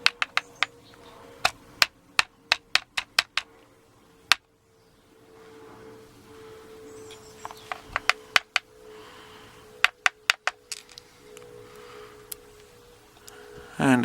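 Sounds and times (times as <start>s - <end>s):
small metal lock parts clicking: 9.8s - 11.5s.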